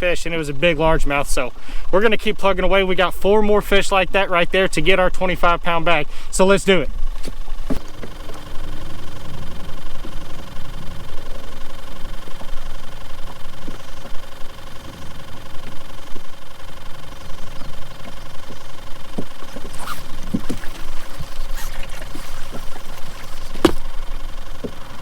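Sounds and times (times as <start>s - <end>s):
boat motor running: 7.0s - 25.0s.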